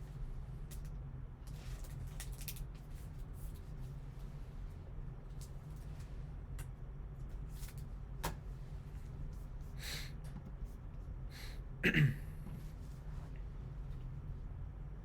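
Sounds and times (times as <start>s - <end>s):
low room hum: 0.0s - 15.0s
short breath: 9.8s - 10.2s.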